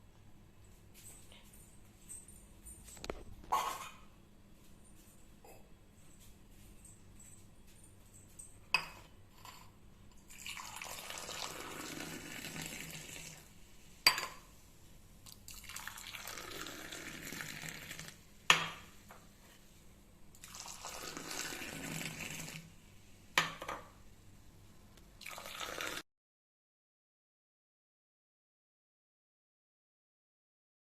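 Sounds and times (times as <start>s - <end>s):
milk pouring: 10.2s - 13.5s, 15.2s - 18.2s, 20.3s - 22.7s, 25.2s - 26.0s
vessel clinking: 14.0s - 14.5s.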